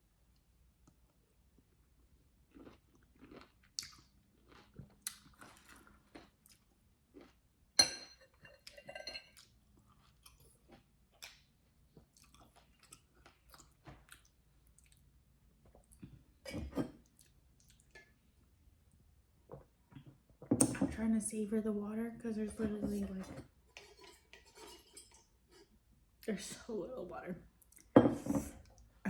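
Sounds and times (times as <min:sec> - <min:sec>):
chewing and sucking on lime: 0:02.5 - 0:07.4, 0:09.4 - 0:15.0.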